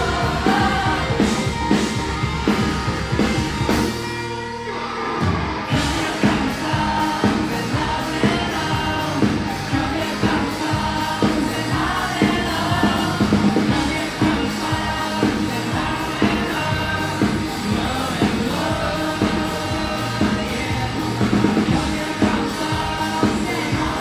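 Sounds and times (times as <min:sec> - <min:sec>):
person singing: 0:00.0 - 0:01.8, 0:05.7 - 0:24.0
drums steady beat: 0:00.0 - 0:04.3, 0:05.2 - 0:24.0
live rock band playing: 0:00.0 - 0:24.0.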